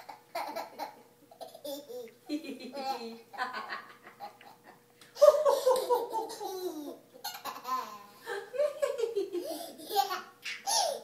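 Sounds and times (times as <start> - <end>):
small child laughing: 0.0 - 11.0
adult laughing: 3.4 - 7.0, 8.3 - 10.1.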